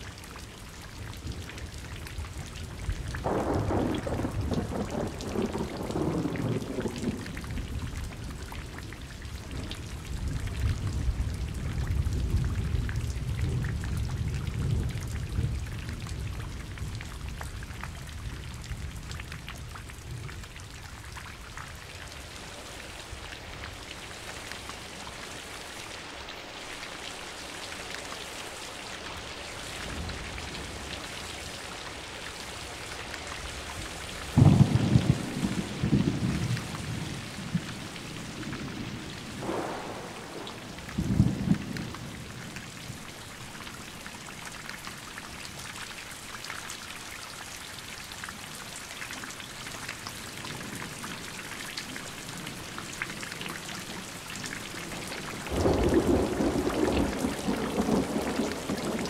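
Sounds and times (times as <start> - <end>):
steady rain falling: 0.0 - 59.0
thunder cracks and rumbles: 3.2 - 8.0, 34.3 - 42.3, 55.5 - 59.0.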